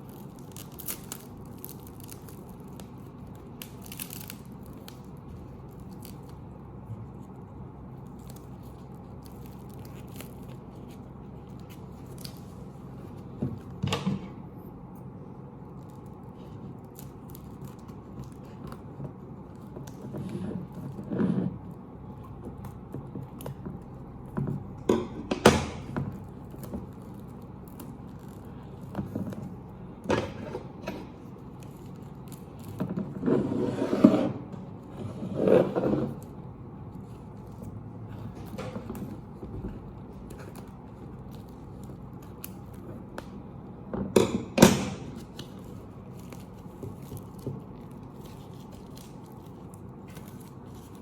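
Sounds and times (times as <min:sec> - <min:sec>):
packaging being unwrapped: 0:00.0 - 0:13.7, 0:15.6 - 0:21.1, 0:26.1 - 0:29.7, 0:31.1 - 0:33.2, 0:35.6 - 0:43.4, 0:45.0 - 0:51.0.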